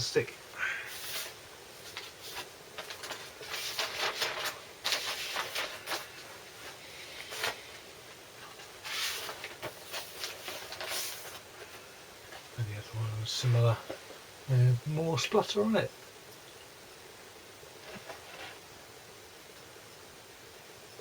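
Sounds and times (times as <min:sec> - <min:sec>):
vinyl record rustling against sleeve: 0:00.9 - 0:12.8, 0:13.4 - 0:14.3, 0:17.7 - 0:18.8.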